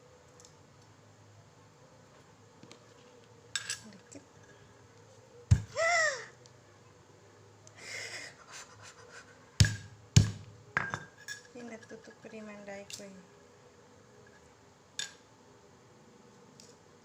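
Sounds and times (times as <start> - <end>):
short rising and falling cry: 5.7 - 6.3
pestle knocking in a mortar: 9.6 - 11.0.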